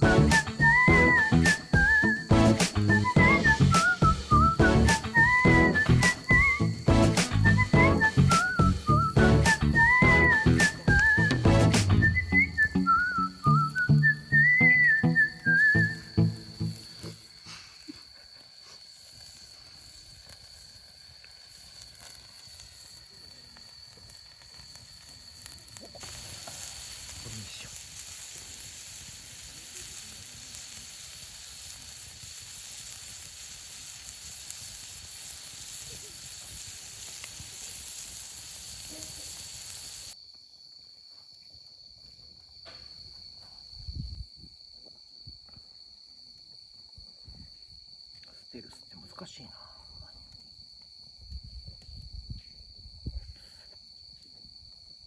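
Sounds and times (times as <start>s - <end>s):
high-pitched insect trill: 0.0s - 11.3s, 12.0s - 55.0s
food sizzling in a pan: 0.0s - 14.6s, 15.4s - 40.2s.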